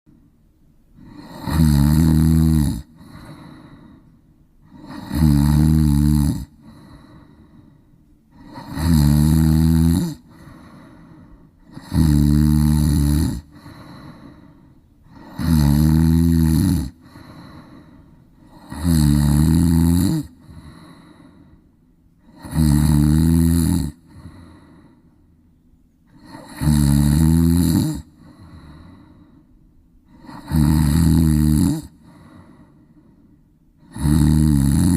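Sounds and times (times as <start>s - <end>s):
loud rasping snores: 1.0s - 4.0s, 4.6s - 7.4s, 8.3s - 14.5s, 15.1s - 21.3s, 22.2s - 24.8s, 26.1s - 29.2s, 30.1s - 32.6s, 33.8s - 34.9s.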